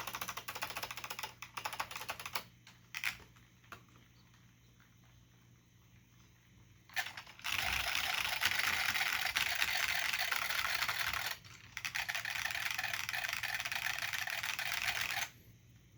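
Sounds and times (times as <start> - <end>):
fast keyboard typing: 0.0 - 4.4, 6.9 - 15.3.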